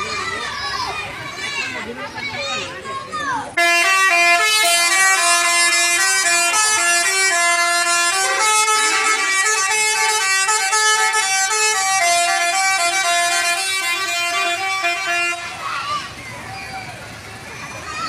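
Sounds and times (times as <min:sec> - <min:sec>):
musical bus horn melody: 0:03.6 - 0:15.7.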